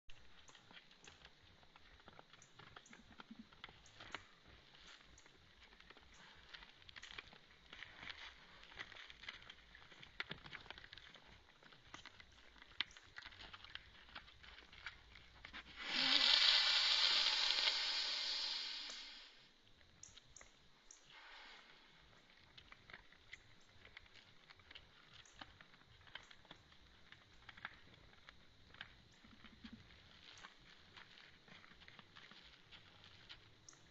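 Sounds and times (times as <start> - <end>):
deer snort-wheeze: 15.7 - 19.4.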